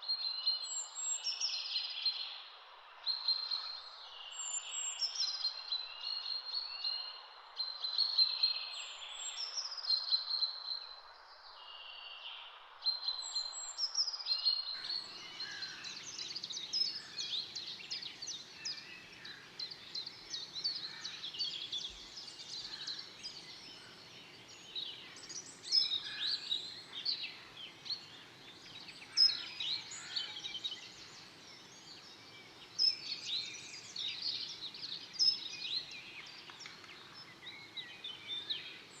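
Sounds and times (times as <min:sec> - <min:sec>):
chorus of birds chirping: 0:14.5 - 0:39.0.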